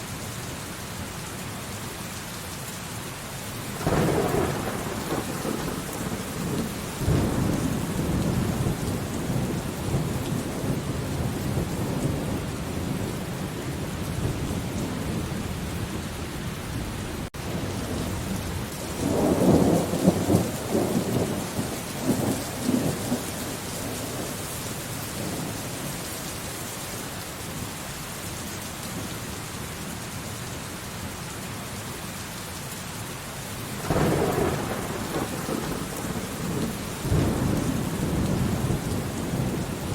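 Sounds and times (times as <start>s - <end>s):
steady rain: 0.0s - 39.9s
rolling thunder: 3.7s - 16.2s, 17.1s - 24.4s, 33.8s - 39.9s.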